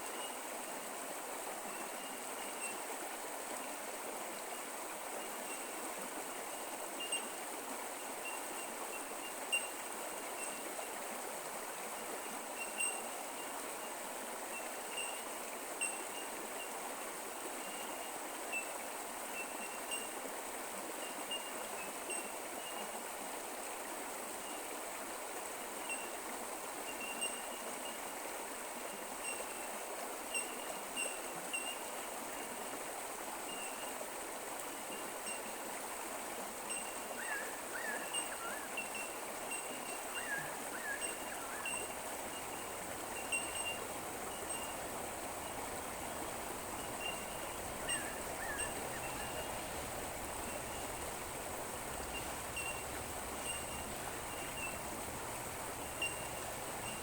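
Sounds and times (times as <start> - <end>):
creek running: 0.0 - 57.0
bird calls: 40.2 - 57.0.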